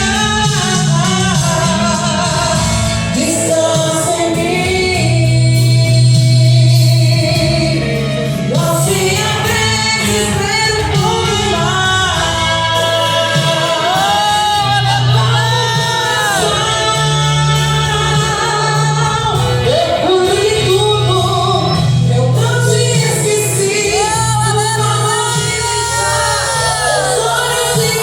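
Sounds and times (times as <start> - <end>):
band accompaniment with bass: 0.0 - 28.0
voices singing gospel: 0.0 - 28.0.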